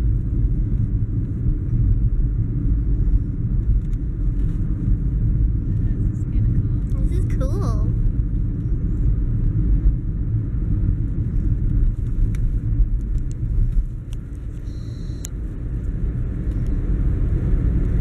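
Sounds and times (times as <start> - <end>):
car driving rumble inside cabin: 0.0 - 18.0.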